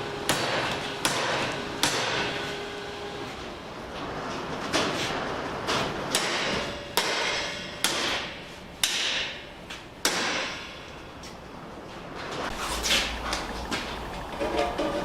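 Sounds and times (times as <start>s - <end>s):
sharp knocks on metal: 0.3s - 2.4s, 6.1s - 9.4s, 10.0s - 10.9s.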